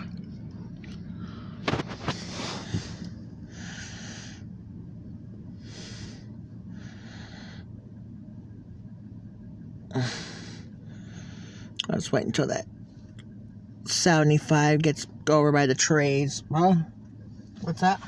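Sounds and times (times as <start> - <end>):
diesel locomotive drone: 0.0 - 18.0
breathy hisses: 1.2 - 4.5, 5.5 - 7.7.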